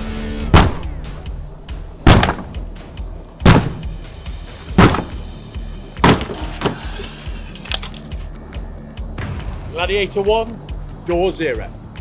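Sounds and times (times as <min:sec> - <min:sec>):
background music: 0:00.0 - 0:12.0
sledgehammer striking a door: 0:00.5 - 0:00.9, 0:02.0 - 0:02.6, 0:03.4 - 0:04.0, 0:04.7 - 0:05.3, 0:06.0 - 0:06.8.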